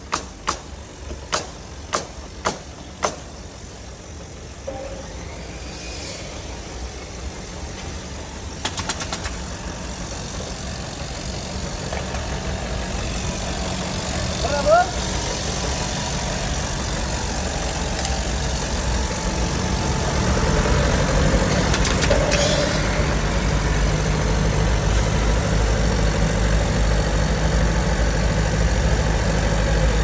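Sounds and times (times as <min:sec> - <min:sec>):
sharp clicks: 0:00.0 - 0:03.3
vehicle engine idling: 0:00.0 - 0:30.0.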